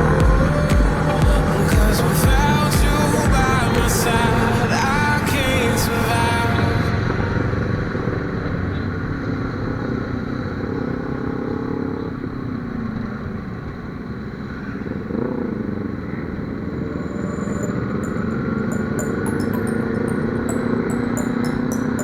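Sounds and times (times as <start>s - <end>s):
motorcycle engine running: 0.0s - 5.2s
wind and road noise: 0.0s - 22.0s.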